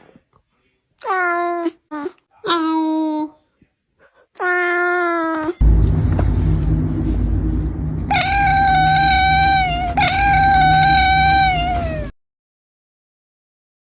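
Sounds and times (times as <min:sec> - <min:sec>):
low rumbling noise: 0:05.6 - 0:12.1
cat meowing: 0:08.1 - 0:12.1.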